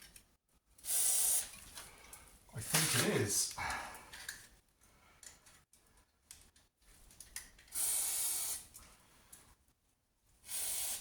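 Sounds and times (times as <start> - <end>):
aerosol can spraying hiss: 7.8 - 8.7, 10.5 - 11.0.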